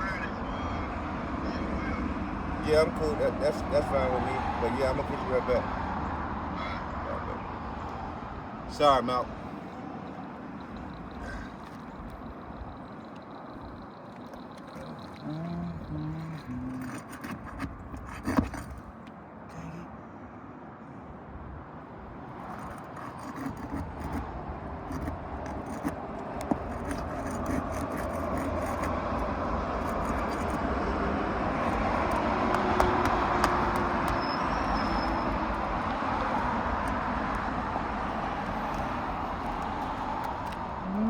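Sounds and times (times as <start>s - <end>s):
vehicle passing: 28.4s - 41.0s.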